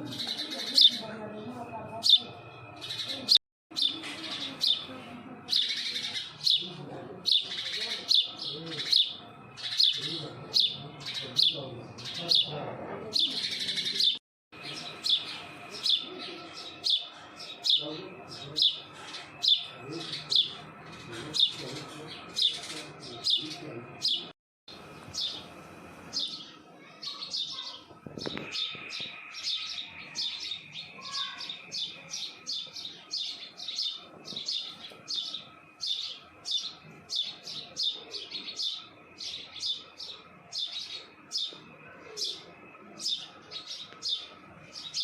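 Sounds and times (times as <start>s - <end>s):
baby sparrow chirping: 0.0s - 1.2s, 1.9s - 24.3s, 26.1s - 45.0s
young sparrow chirping: 0.1s - 1.2s, 2.0s - 4.9s, 5.5s - 12.5s, 13.1s - 20.6s.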